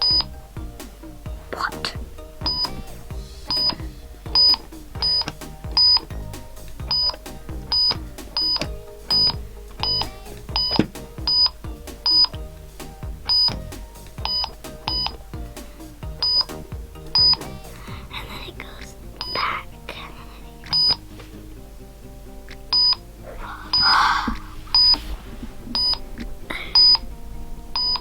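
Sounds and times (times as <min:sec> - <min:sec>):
electronic bleeps: 0:00.0 - 0:19.4, 0:24.7 - 0:27.0.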